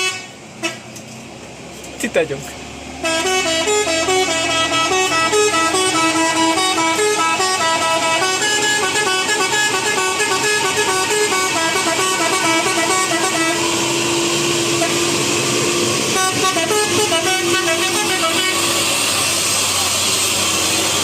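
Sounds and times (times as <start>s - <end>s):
musical air horn tune: 0.0s - 0.8s, 3.0s - 15.2s, 16.0s - 19.0s.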